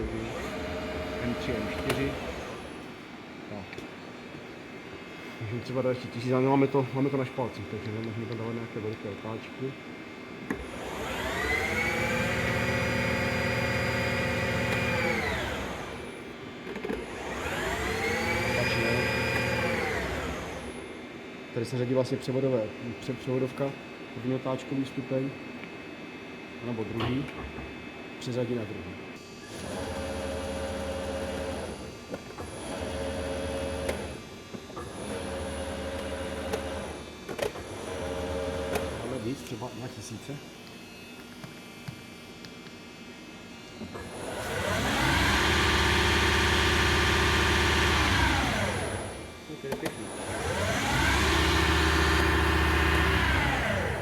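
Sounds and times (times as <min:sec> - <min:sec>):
lathe spindle whine: 0:00.0 - 0:03.2, 0:04.7 - 0:21.6, 0:43.1 - 0:54.0.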